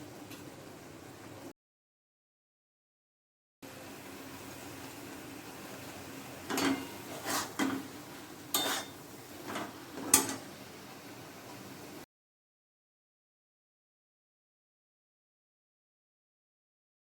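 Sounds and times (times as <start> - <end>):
metal utensil scraping a pan: 6.5 - 10.5.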